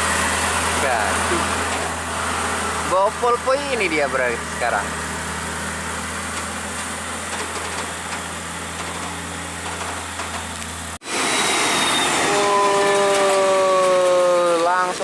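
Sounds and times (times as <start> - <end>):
heavy truck engine droning: 0.0 - 15.0
long whine dropping in pitch: 11.0 - 15.0.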